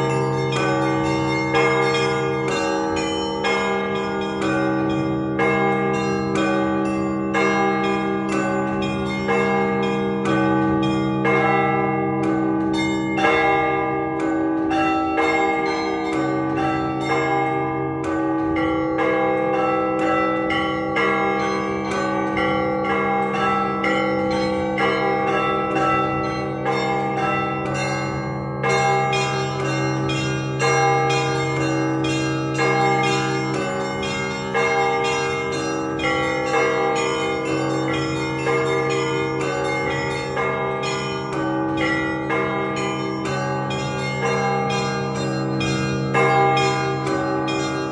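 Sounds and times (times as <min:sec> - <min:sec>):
deep tones of large bells: 0:00.0 - 0:47.9.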